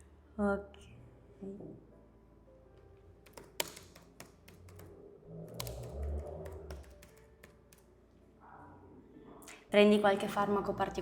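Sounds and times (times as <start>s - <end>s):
keyboard keys clicking: 3.2s - 7.9s.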